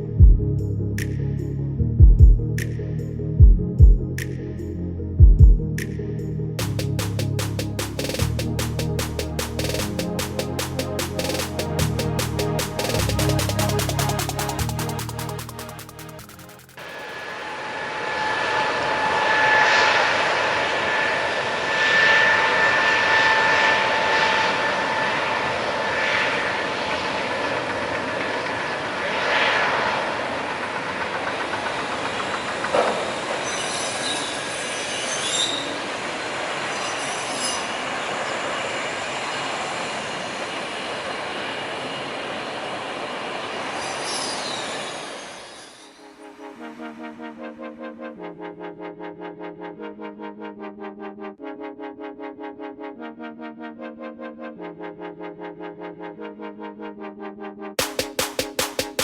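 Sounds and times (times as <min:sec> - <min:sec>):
jet engines rushing: 0:06.6 - 0:47.5, 0:57.8 - 0:59.0
high two-tone engine whine: 0:16.8 - 0:48.2.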